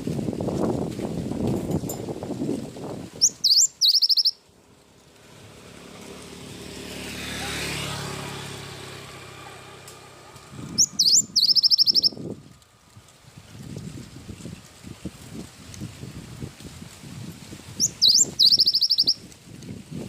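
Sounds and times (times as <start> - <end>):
bird singing whistled phrases: 3.2 - 4.4, 10.8 - 12.2, 17.8 - 19.2
passing vehicle engine hum: 4.0 - 19.9.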